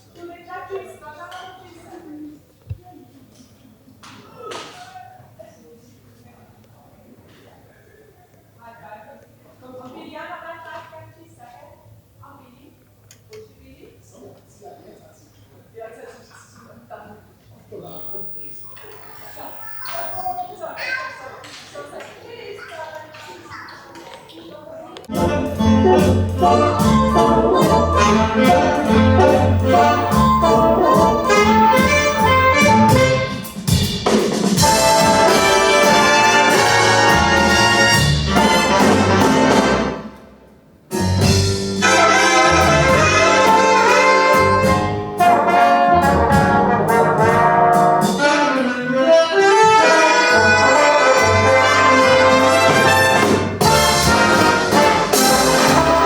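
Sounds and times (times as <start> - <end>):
big band swing jazz: 25.1 - 40.2, 40.9 - 56.0.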